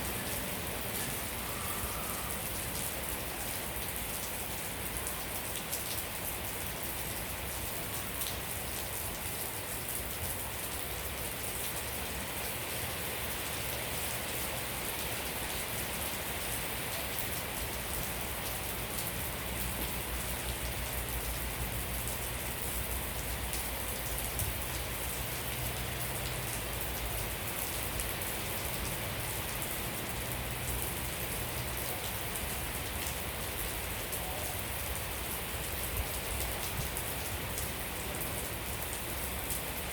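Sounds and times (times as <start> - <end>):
steady rain pattering: 0.0 - 39.9.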